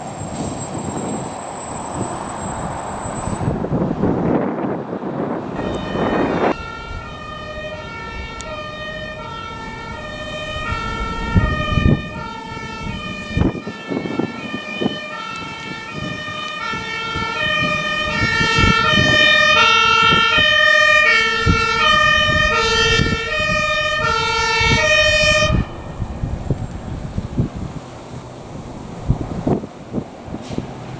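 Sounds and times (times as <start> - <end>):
engine and road noise: 0.0 - 30.9
two-tone fire engine sirens: 0.0 - 30.9.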